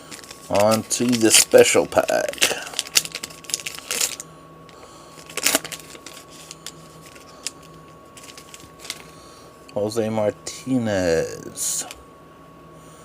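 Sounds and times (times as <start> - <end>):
card pack rustling: 0.0 - 4.2, 4.8 - 9.2.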